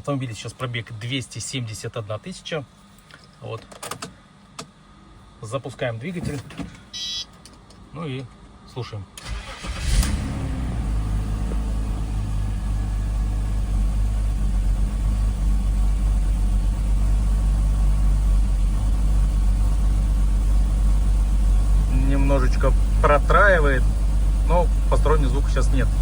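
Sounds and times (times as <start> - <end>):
car engine starting and idling: 9.2 - 26.0.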